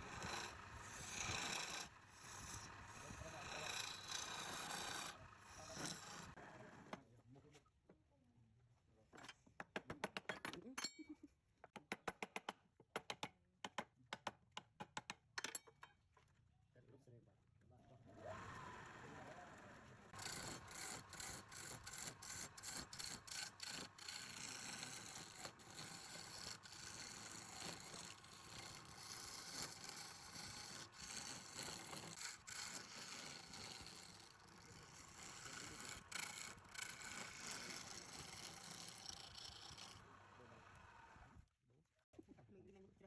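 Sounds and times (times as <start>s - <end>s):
abrasive scrubbing hard surface: 0.0s - 6.4s, 20.1s - 40.0s.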